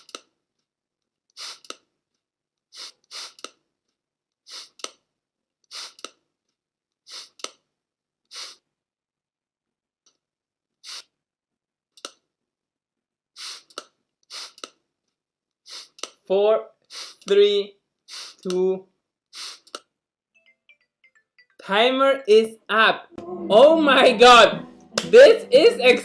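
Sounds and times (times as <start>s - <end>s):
spray bottle squirts: 14.3s - 14.6s, 19.4s - 19.8s.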